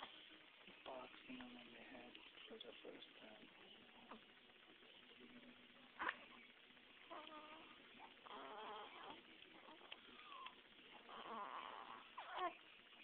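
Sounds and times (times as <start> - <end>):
newborn baby crying: 7.1 - 12.6.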